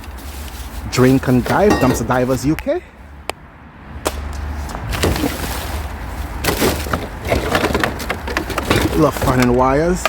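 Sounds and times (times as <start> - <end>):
rubbish rustling and scraping: 0.0 - 2.6, 4.6 - 10.0.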